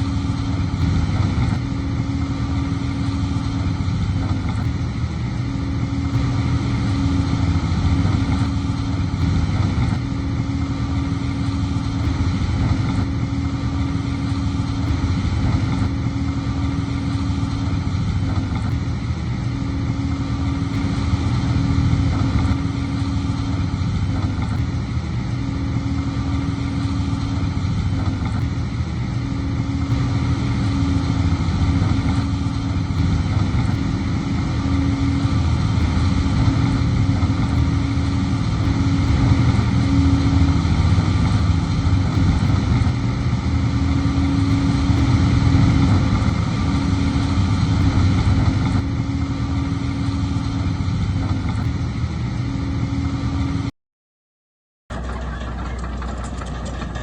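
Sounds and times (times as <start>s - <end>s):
heavy diesel engine running: 0.0s - 53.7s, 54.9s - 57.0s.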